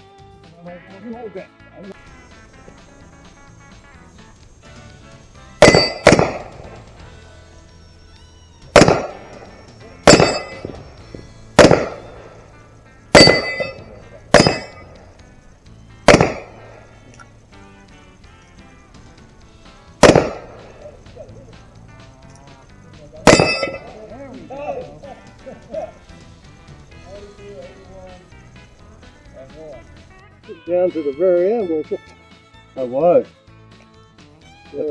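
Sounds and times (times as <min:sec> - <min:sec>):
pistol shots: 0:02.2 - 0:07.4, 0:08.5 - 0:29.7
steel plates clanging: 0:04.5 - 0:07.2, 0:08.7 - 0:17.3, 0:23.1 - 0:25.0.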